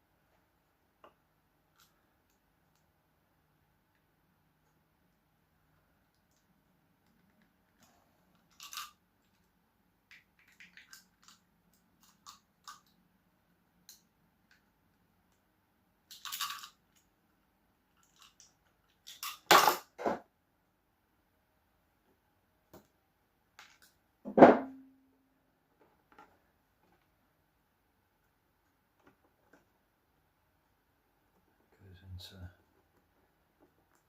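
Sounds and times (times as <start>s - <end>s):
small clicks and clinks: 7.0s - 9.5s, 10.1s - 13.0s, 16.1s - 17.1s, 17.9s - 19.9s
loud knock: 24.3s - 24.8s.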